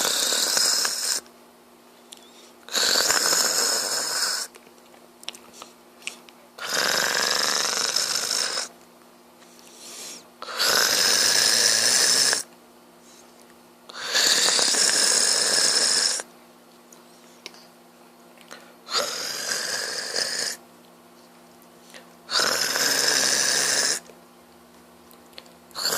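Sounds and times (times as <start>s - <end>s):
man snoring: 0.0s - 1.2s, 2.7s - 4.5s, 6.6s - 8.7s, 10.1s - 12.5s, 13.9s - 16.3s, 18.9s - 20.6s, 22.3s - 24.0s.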